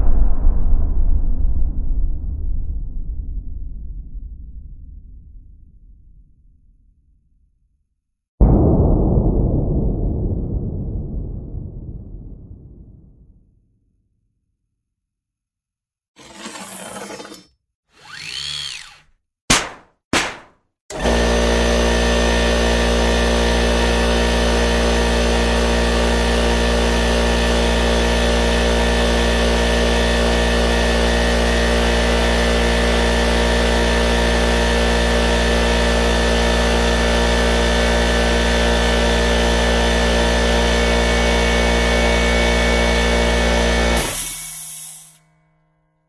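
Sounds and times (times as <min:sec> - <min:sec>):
motor running steadily: 0:18.0 - 0:19.0, 0:20.9 - 0:45.2.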